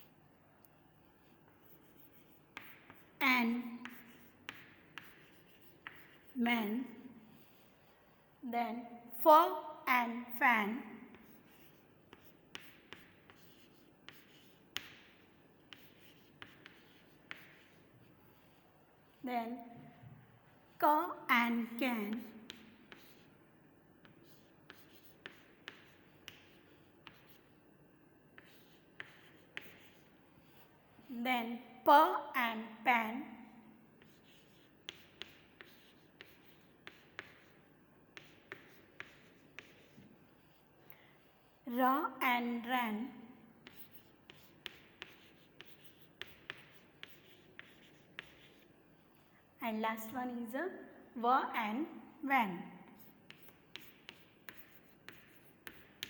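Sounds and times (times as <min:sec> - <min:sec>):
light scratching of writing: 0:00.0 - 0:08.3, 0:11.0 - 0:31.2, 0:33.5 - 0:41.7, 0:43.5 - 0:49.5, 0:52.8 - 0:56.0
pen tapping while writing: 0:01.6 - 0:03.1, 0:03.8 - 0:06.2, 0:12.1 - 0:17.8, 0:24.0 - 0:27.4, 0:53.3 - 0:56.0.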